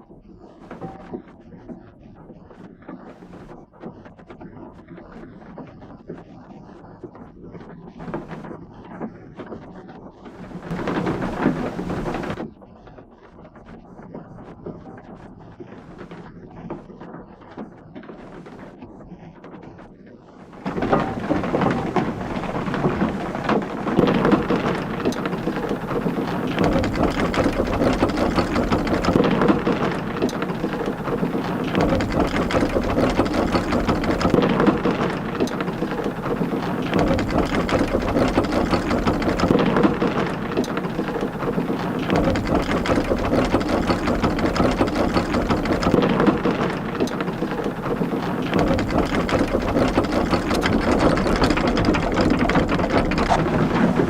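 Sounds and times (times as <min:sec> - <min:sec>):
water splashing onto waterwheel: 0:10.4 - 0:12.5, 0:20.5 - 0:54.0.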